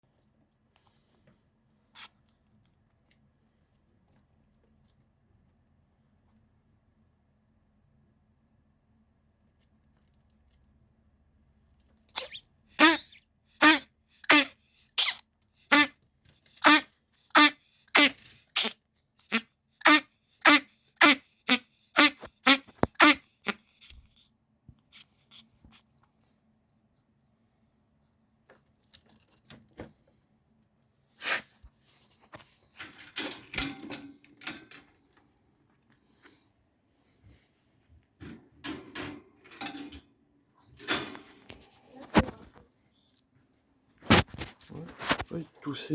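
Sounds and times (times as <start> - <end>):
ferret coughing: 12.8 - 15.9, 16.6 - 18.7, 19.3 - 23.6.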